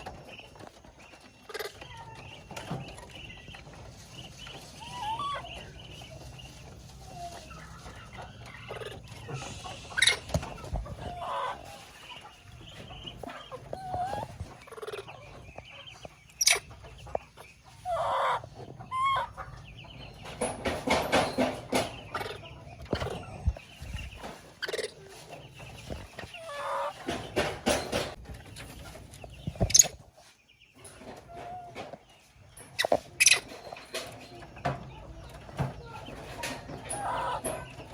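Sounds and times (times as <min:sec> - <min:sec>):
baby monkey squeaky calls: 0:04.8 - 0:05.6, 0:13.8 - 0:15.0.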